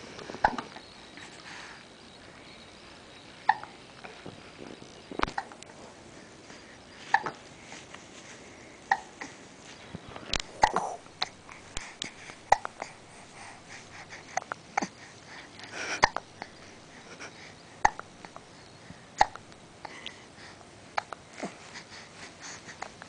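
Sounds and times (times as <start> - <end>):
small child hiccuping: 3.5 - 3.7, 7.1 - 7.4, 8.9 - 9.2.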